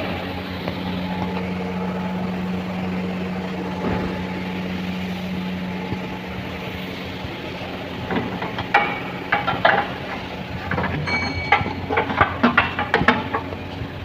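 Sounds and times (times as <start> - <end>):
metal tools clinking: 10.7 - 13.0.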